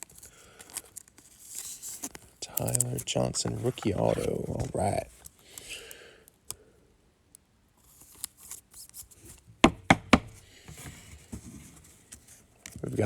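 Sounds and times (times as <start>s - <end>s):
cards rustling: 0.0s - 6.0s, 10.3s - 13.0s.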